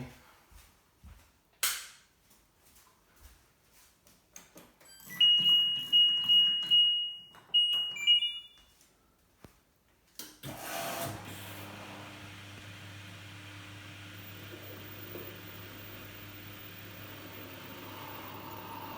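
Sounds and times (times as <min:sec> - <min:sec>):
washing machine motor hum: 0:10.5 - 0:18.9.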